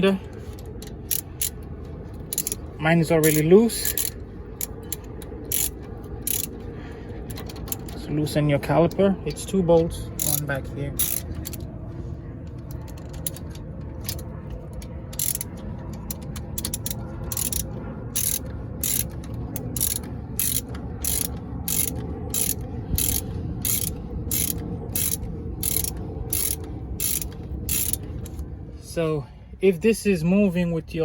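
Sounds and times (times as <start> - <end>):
ratchet wrench clicking: 0.4 - 6.7, 7.3 - 8.1, 8.9 - 11.7, 12.4 - 28.4.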